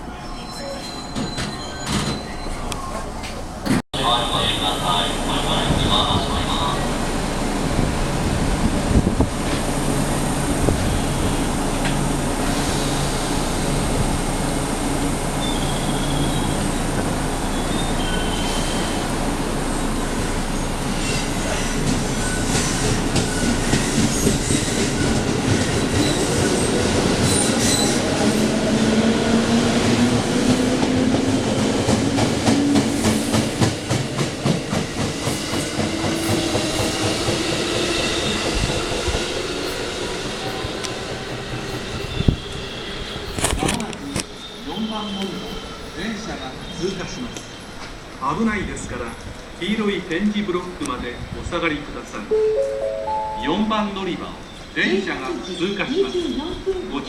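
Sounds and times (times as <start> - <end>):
electric train hum: 52.3 - 54.7.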